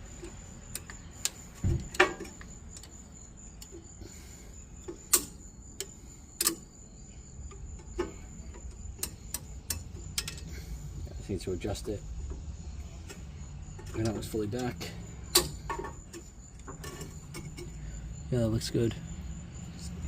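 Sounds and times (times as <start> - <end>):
metal tool clicks and knocks: 7.5 - 10.5, 13.8 - 17.8.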